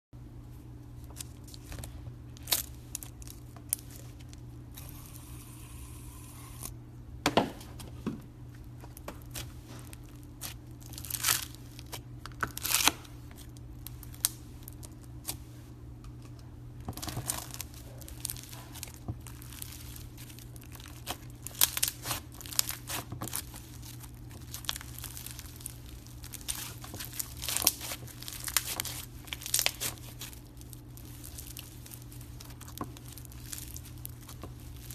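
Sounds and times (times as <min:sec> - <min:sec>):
steady low hum: 0:00.2 - 0:34.9
slime crackling and popping: 0:09.2 - 0:15.1, 0:16.9 - 0:34.9.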